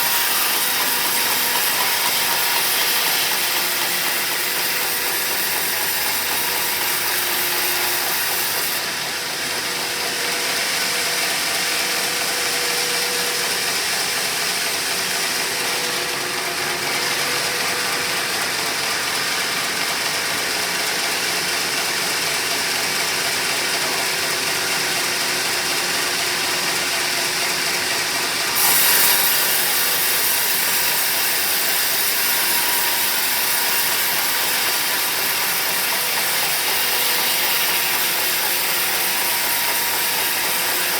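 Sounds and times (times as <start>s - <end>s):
saw blade cutting log: 0.0s - 40.9s.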